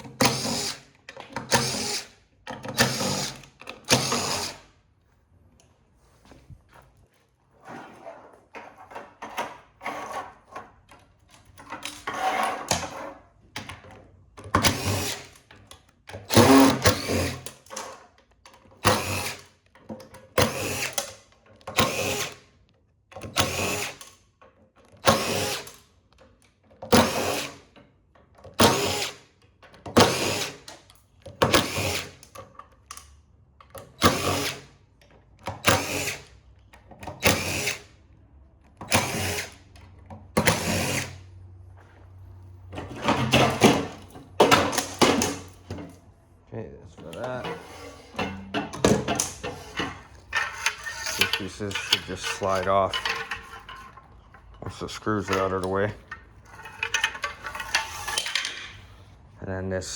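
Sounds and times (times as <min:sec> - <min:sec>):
power drill short bursts: 0:00.2 - 0:00.8, 0:01.5 - 0:04.6, 0:14.6 - 0:15.4, 0:16.3 - 0:17.5, 0:18.8 - 0:19.5, 0:20.4 - 0:21.0, 0:21.8 - 0:22.4, 0:23.3 - 0:24.0, 0:25.0 - 0:25.8, 0:26.9 - 0:27.6, 0:28.6 - 0:29.2, 0:30.0 - 0:30.7, 0:31.5 - 0:32.2, 0:34.0 - 0:34.7, 0:35.6 - 0:36.3, 0:37.2 - 0:37.9, 0:38.9 - 0:39.6, 0:40.4 - 0:41.2
handling noise: 0:41.6 - 0:59.2.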